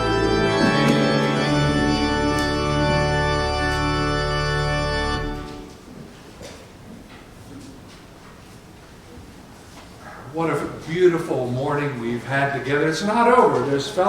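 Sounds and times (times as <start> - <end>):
church organ chords: 0.0 - 5.8
room reverberation: 0.0 - 14.0.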